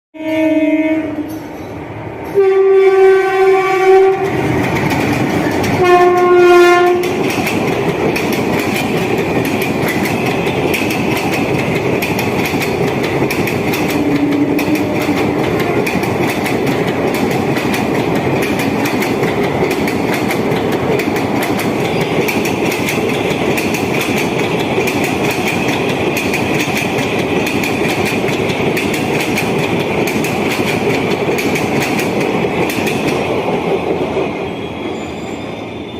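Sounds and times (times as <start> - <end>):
train horn blasts: 0.2 - 1.5, 2.3 - 4.4, 5.8 - 7.2, 13.9 - 15.8
train wheels clickety-clack: 3.6 - 35.5.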